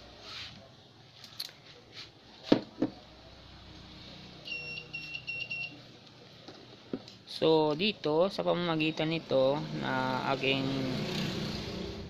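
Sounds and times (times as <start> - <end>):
high electronic buzzer beeps: 4.4 - 5.8.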